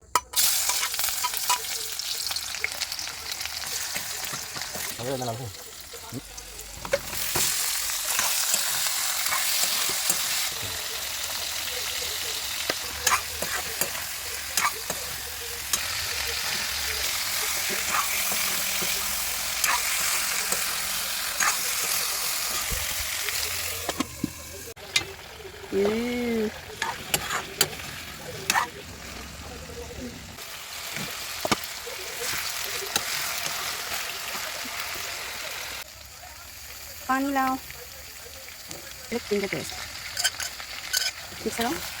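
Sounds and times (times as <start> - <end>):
food sizzling in a pan: 0.2 - 42.0
utensil scraping a pan: 26.8 - 29.2.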